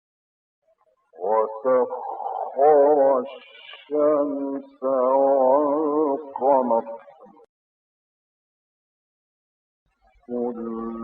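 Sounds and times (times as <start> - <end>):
man reciting: 1.2 - 7.4, 10.3 - 11.0.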